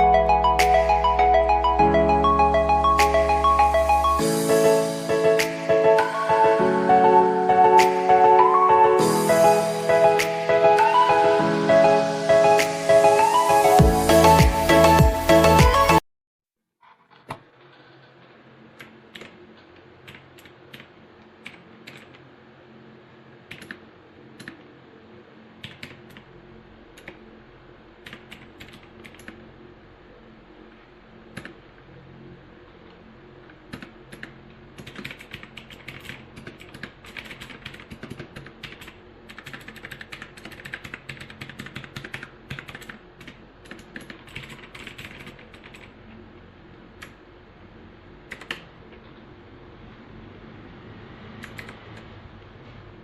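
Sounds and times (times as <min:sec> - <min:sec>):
mechanical keyboard typing: 0:18.8 - 0:19.4, 0:20.0 - 0:22.2, 0:23.4 - 0:23.8, 0:25.6 - 0:26.2, 0:28.0 - 0:29.4, 0:33.7 - 0:46.0, 0:48.3 - 0:48.7, 0:51.4 - 0:52.1.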